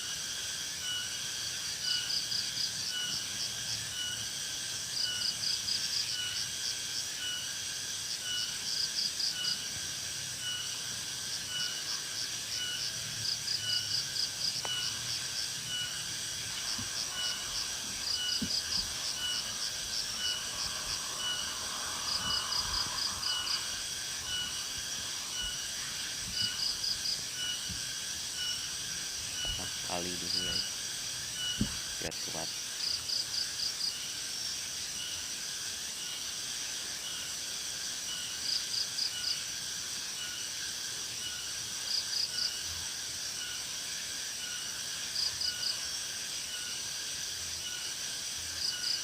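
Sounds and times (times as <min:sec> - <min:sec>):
insects chirring in pulses: 0:00.0 - 0:49.0.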